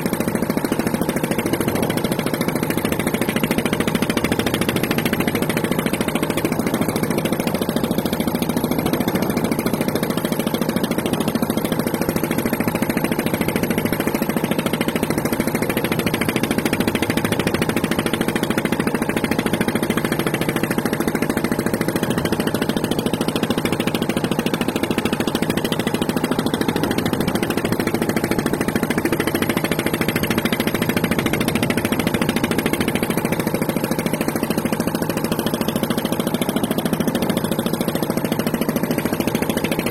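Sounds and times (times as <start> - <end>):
engine running steadily: 0.0 - 39.9.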